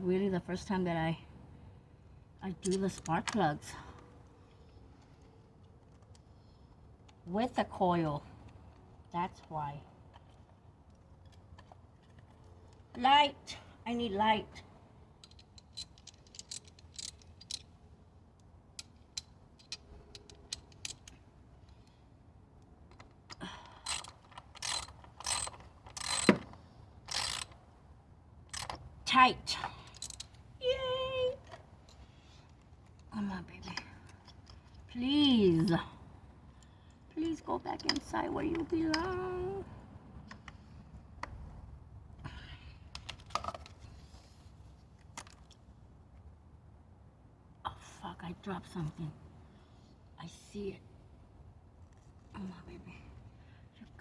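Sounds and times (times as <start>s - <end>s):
ratchet wrench clicking: 15.2s - 17.7s, 23.8s - 27.6s.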